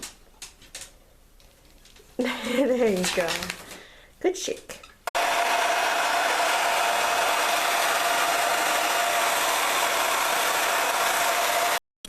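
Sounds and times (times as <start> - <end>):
hair dryer blowing: 5.2 - 11.8.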